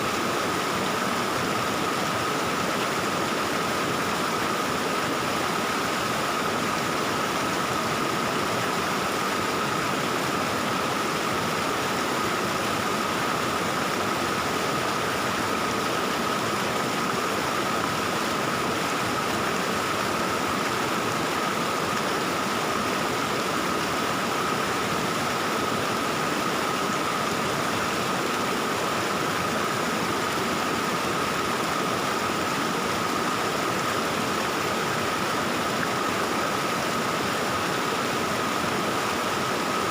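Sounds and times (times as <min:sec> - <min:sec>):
stream water babbling: 0:00.0 - 0:39.9.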